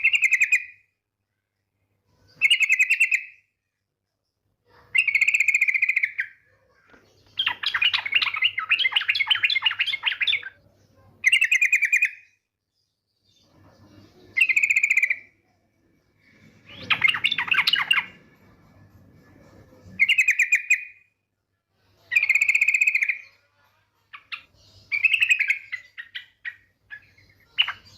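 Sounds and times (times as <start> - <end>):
bird chattering phrases: 4.8 - 10.6, 14.3 - 15.4, 16.7 - 18.1, 22.1 - 23.2.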